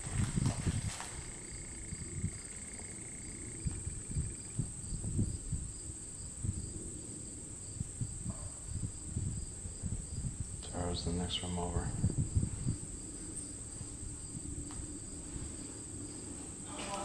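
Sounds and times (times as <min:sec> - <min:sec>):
crickets chirping: 0:00.0 - 0:17.0
faint steady tone: 0:01.2 - 0:17.0.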